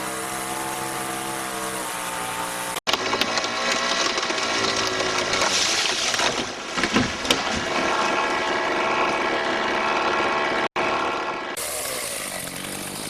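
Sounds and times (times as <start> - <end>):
chainsaw cutting through limb: 0.0 - 13.0
wood cracking: 2.9 - 9.5.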